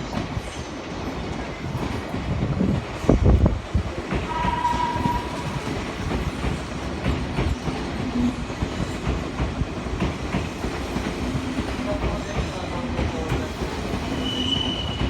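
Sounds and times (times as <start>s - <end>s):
train wheels clacking over joints: 4.1s - 15.0s.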